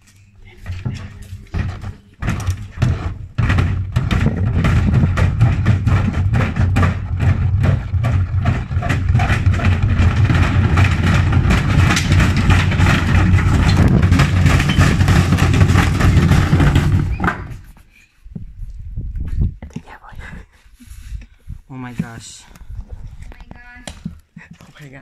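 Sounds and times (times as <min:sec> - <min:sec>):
washing machine drum knocking: 0:03.4 - 0:17.2.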